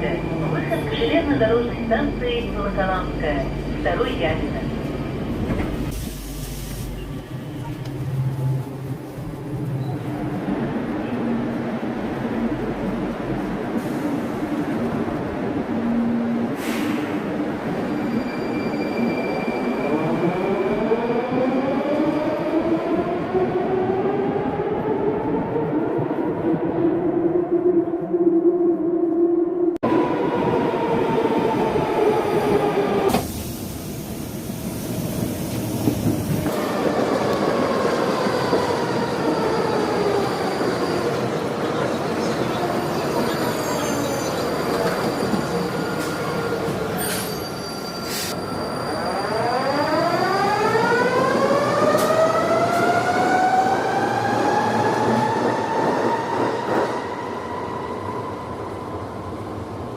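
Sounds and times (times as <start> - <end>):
train rumble and rattle: 0.0 - 18.1, 29.9 - 48.6
train rumble: 29.8 - 47.5.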